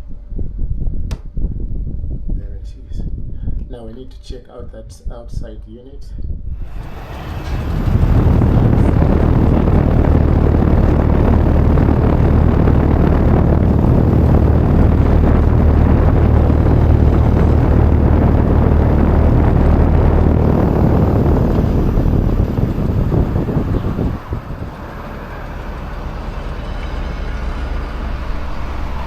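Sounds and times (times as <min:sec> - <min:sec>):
compressor low hum: 0:00.0 - 0:29.0
fan rushing: 0:06.4 - 0:29.0.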